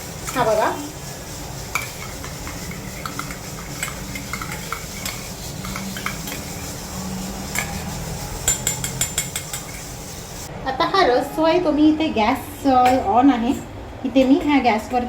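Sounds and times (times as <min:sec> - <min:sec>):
spoon clinking against bowl: 0:01.7 - 0:06.7, 0:07.5 - 0:10.1.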